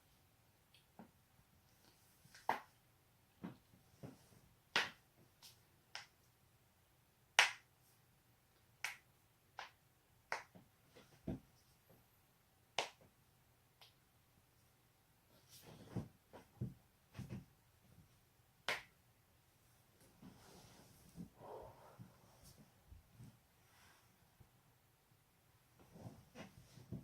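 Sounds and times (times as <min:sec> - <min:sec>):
soft rustle: 0:19.6 - 0:24.5, 0:25.7 - 0:27.0.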